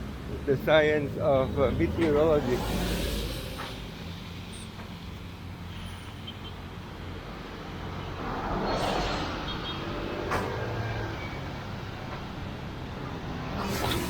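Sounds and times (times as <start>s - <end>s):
traffic engines running: 0.0s - 14.0s
vehicle passing: 1.4s - 4.4s, 7.7s - 14.0s.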